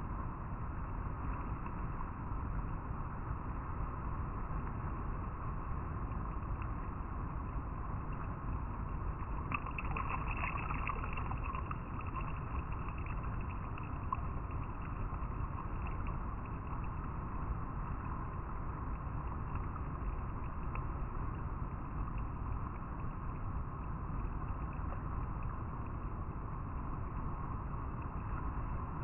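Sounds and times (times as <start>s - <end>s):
river water flowing over rocks: 7.6s - 21.3s.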